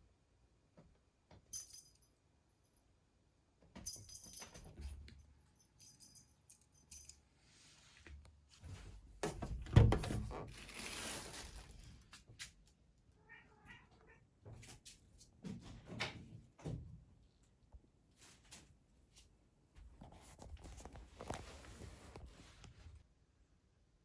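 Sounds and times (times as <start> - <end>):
light jingling: 1.5 - 2.7, 3.8 - 7.2
rustling: 10.5 - 12.2.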